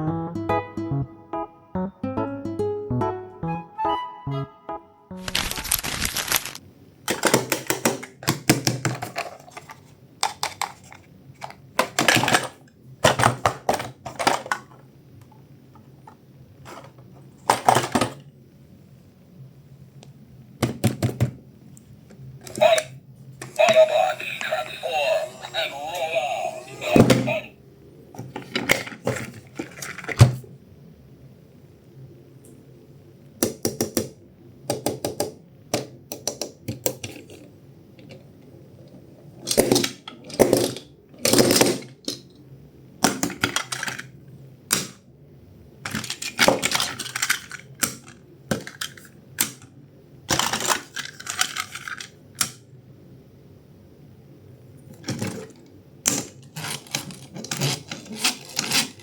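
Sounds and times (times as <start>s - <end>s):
plastic toys clicking and rattling: 5.2s - 14.8s, 16.7s - 18.2s, 28.3s - 30.4s, 35.8s - 38.2s, 39.4s - 42.4s, 43.0s - 45.0s, 45.8s - 49.6s, 50.3s - 52.6s, 55.0s - 59.0s.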